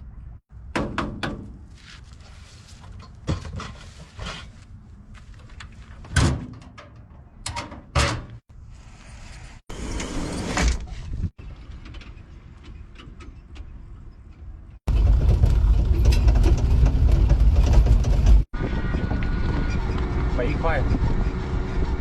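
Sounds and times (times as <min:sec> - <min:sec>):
scraping rustle: 0:01.7 - 0:06.0
gear knocking and clattering: 0:11.4 - 0:18.5.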